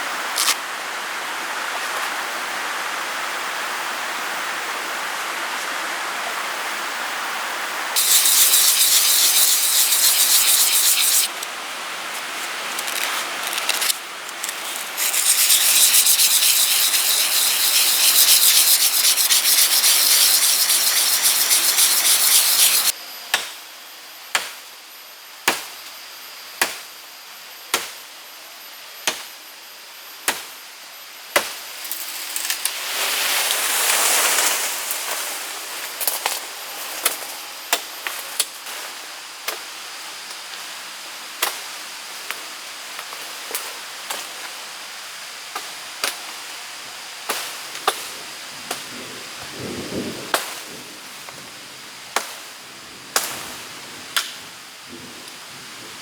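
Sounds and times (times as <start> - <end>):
loud rushing hiss: 8.0 - 22.9.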